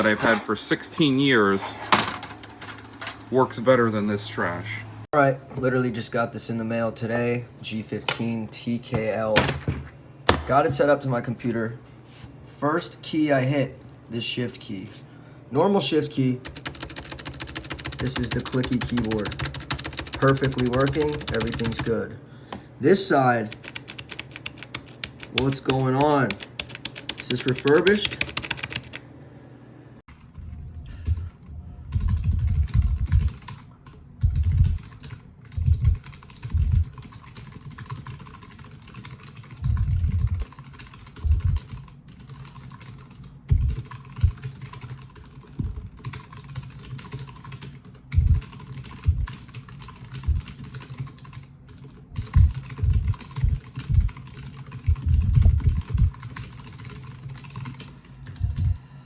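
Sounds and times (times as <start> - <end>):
mechanical keyboard keys pressed: 16.4 - 22.0, 23.2 - 29.0.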